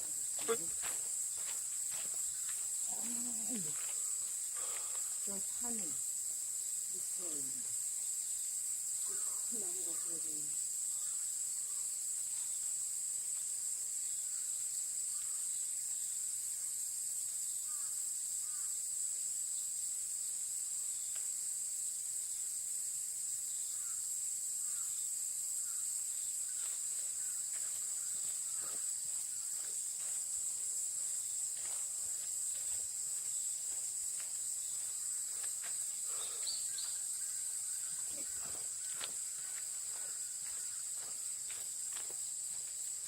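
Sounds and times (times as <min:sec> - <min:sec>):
high-pitched insect chorus: 0:00.0 - 0:43.0
faint chirps: 0:34.5 - 0:41.3.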